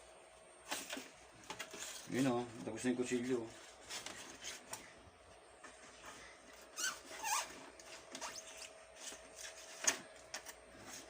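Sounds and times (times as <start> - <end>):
short squeak: 6.7 - 7.5.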